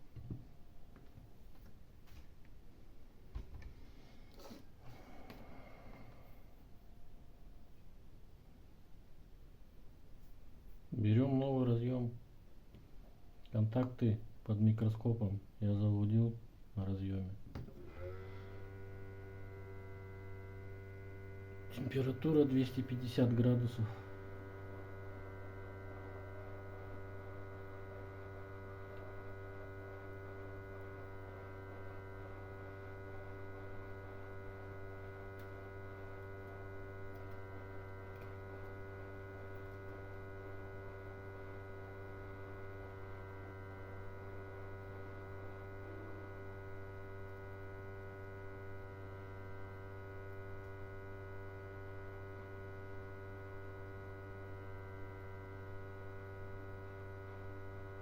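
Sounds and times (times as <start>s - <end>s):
electrical mains hum: 0.0s - 58.0s.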